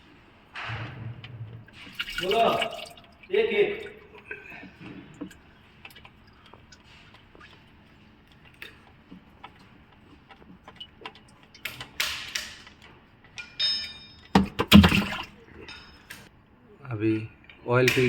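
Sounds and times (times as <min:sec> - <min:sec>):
ringing metal clink: 0:13.4 - 0:14.4, 0:15.6 - 0:16.2.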